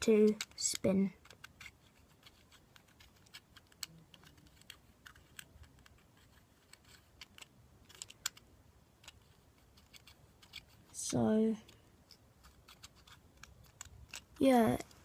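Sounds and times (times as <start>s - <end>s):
light plastic clicks: 6.6s - 9.2s.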